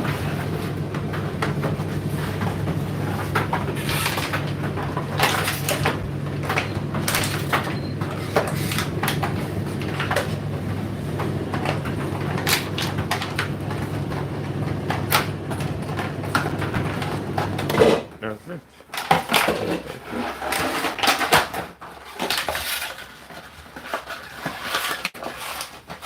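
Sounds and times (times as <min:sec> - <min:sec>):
tumble dryer motor hum: 0:00.0 - 0:20.6.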